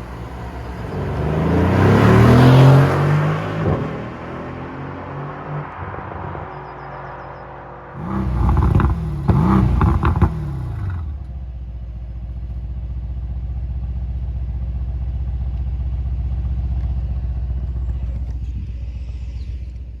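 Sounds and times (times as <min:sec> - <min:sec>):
engine revving with crackles and pops: 0:00.0 - 0:11.5.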